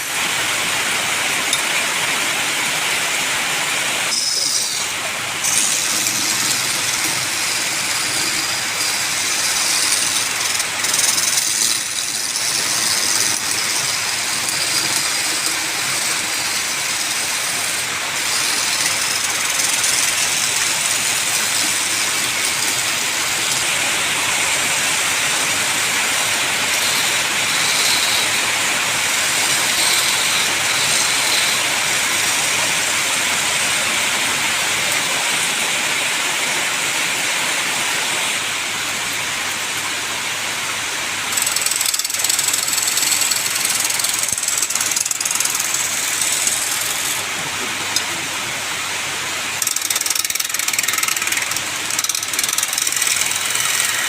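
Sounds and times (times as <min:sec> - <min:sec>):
hiss of tool on spinning wood: 0:02.3 - 0:36.0, 0:40.9 - 0:54.0
wood lathe running: 0:04.0 - 0:35.5, 0:41.1 - 0:48.2, 0:49.4 - 0:54.0.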